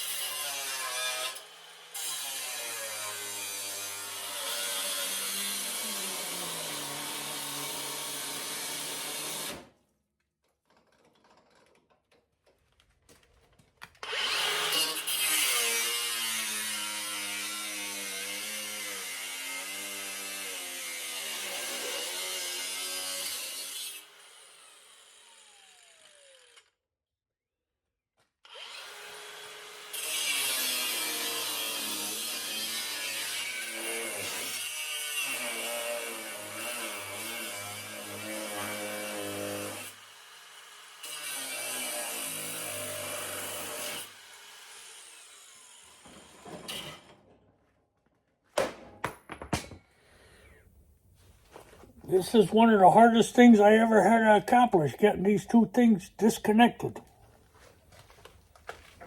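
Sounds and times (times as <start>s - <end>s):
power tool whine: 14.0s - 26.7s, 28.5s - 47.0s.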